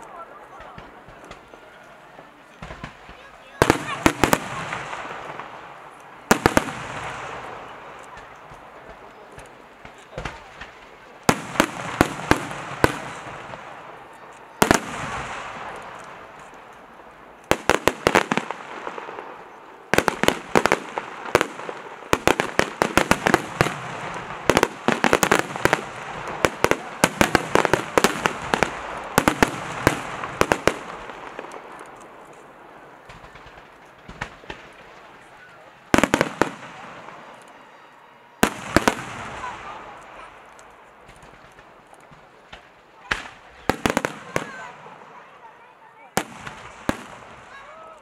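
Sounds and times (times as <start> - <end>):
fireworks bursting with bangs and crackles: 0.0 - 48.0.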